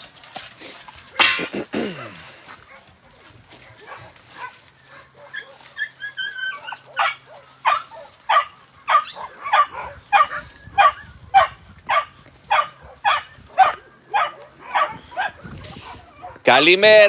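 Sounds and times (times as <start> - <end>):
dog barking: 2.7 - 5.7, 6.5 - 16.4.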